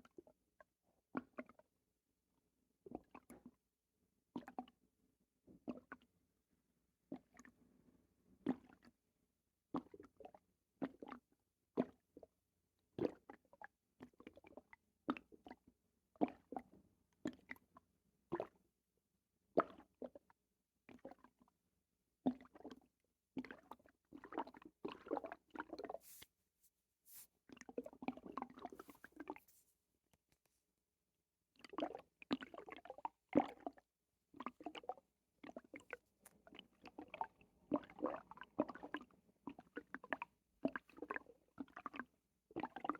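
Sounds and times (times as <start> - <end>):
bowels gurgling and squelching: 27.1 - 29.7.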